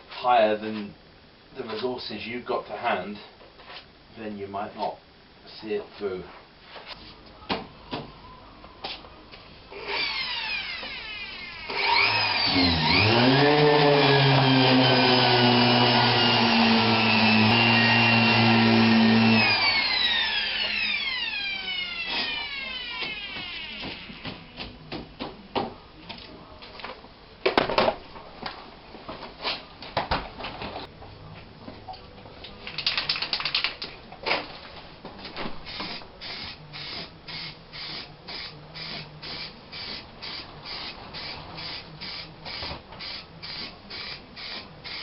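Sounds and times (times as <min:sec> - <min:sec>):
power tool motor whining: 0:09.8 - 0:24.1.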